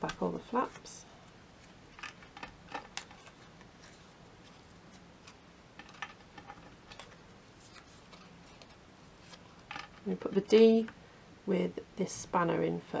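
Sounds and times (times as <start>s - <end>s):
card folding clicks and crackles: 0.0s - 10.1s.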